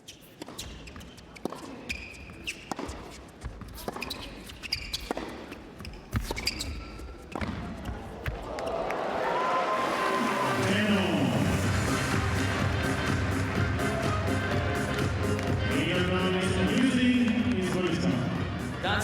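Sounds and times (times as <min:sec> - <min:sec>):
shoe squeaks: 0:00.0 - 0:08.1
racket striking tennis ball: 0:00.4 - 0:05.5
ball bouncing: 0:00.4 - 0:08.7, 0:12.6 - 0:15.9
crowd noise: 0:06.8 - 0:19.0.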